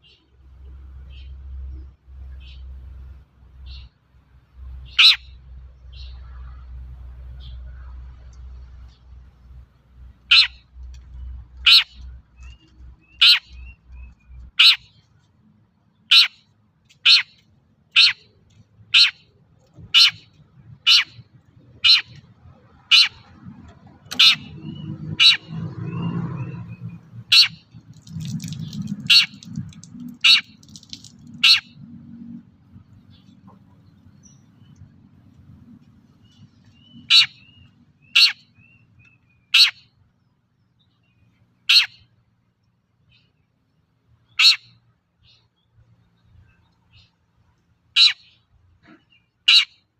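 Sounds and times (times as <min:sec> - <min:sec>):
bird giving harsh call: 0:04.9 - 0:05.2, 0:10.3 - 0:10.6, 0:11.6 - 0:12.0, 0:13.1 - 0:13.7, 0:17.0 - 0:18.3, 0:19.9 - 0:21.2, 0:21.8 - 0:22.2, 0:30.2 - 0:30.6, 0:37.0 - 0:37.5, 0:38.1 - 0:38.5, 0:44.4 - 0:44.7, 0:48.0 - 0:48.3.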